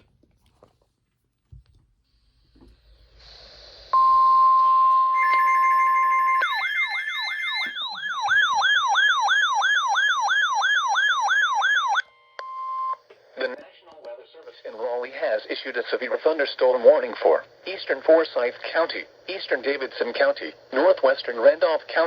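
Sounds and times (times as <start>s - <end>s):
radio hiss: 2.6s - 4.0s, 13.2s - 22.0s
steady warning alarm tone: 4.0s - 13.0s
sweeping siren alarm: 4.0s - 13.0s.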